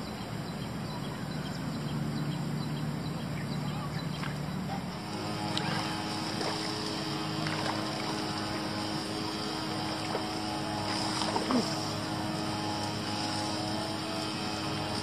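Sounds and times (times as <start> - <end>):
small motor running: 0.0 - 15.0.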